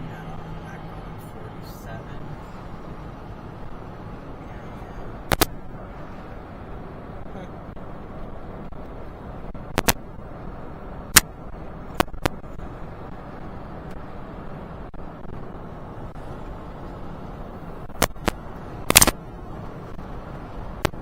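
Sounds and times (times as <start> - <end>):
car cabin road noise: 0.0 - 21.0
short sharp clicks: 5.3 - 5.5, 18.0 - 19.2.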